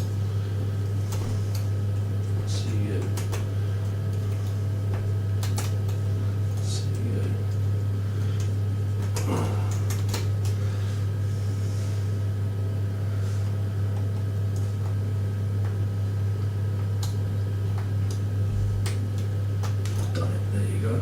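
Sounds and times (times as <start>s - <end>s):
low hum: 0.0s - 21.0s.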